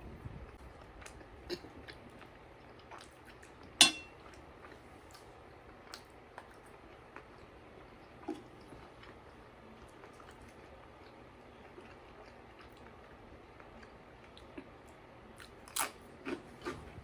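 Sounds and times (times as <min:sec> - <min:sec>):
faint chewing: 0:00.2 - 0:17.0
tableware clink: 0:03.8 - 0:04.2.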